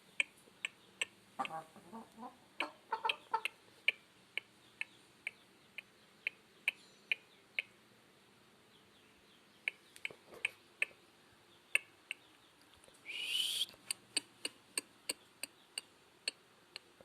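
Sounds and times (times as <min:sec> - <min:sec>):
irregular sharp ticks: 0:00.2 - 0:01.6, 0:02.6 - 0:07.7, 0:09.6 - 0:11.0, 0:12.8 - 0:17.0
chicken call: 0:13.1 - 0:13.8.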